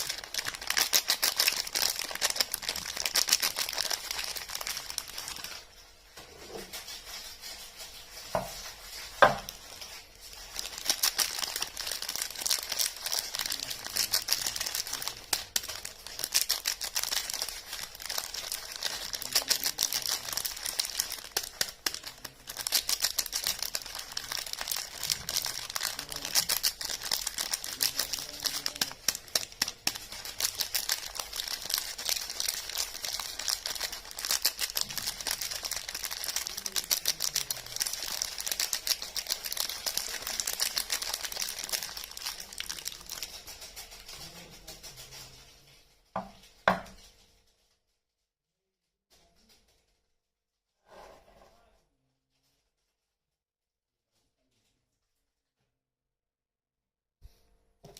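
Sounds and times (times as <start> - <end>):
soap wrapper crinkling: 0.0 - 5.7, 8.3 - 44.1.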